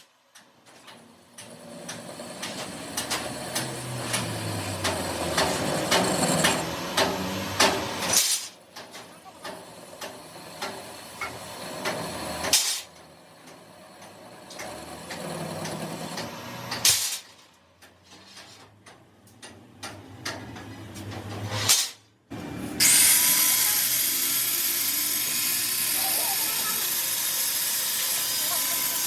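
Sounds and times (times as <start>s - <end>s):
power tools running: 1.3s - 8.6s, 9.4s - 17.2s, 22.3s - 29.0s.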